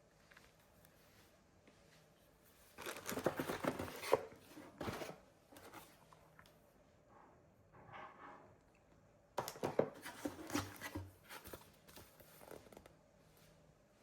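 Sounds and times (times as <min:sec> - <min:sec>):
rustling and crinkling: 0:00.0 - 0:06.6, 0:09.4 - 0:13.6.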